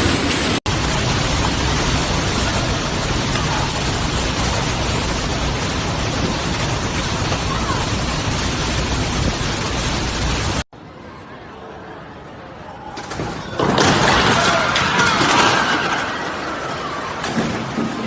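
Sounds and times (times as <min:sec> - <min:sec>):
heavy rain: 0:00.0 - 0:10.7.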